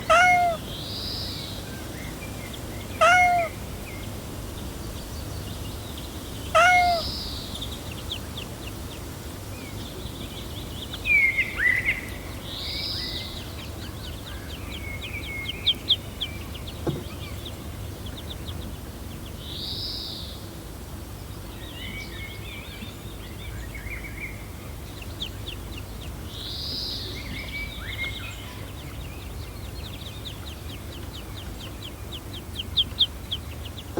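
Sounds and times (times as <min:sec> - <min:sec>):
birdsong chirps and trills: 0:00.0 - 0:33.9
cat meowing: 0:00.1 - 0:00.6, 0:03.0 - 0:03.5, 0:06.6 - 0:07.0.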